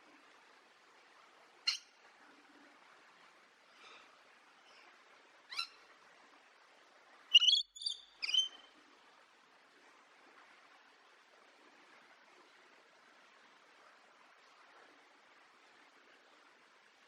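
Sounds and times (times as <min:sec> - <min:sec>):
faint steady hiss: 0:00.0 - 0:17.0
parrot calling: 0:07.3 - 0:08.6
sharp parrot chirps: 0:07.3 - 0:08.6.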